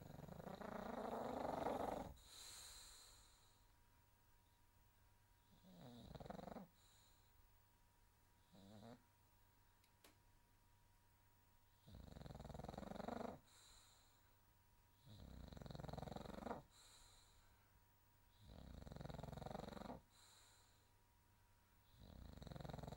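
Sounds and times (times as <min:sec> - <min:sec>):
pet snoring: 0:00.0 - 0:03.6, 0:05.4 - 0:07.2, 0:08.4 - 0:09.0, 0:11.8 - 0:14.2, 0:15.0 - 0:17.4, 0:18.3 - 0:20.8, 0:21.9 - 0:22.9.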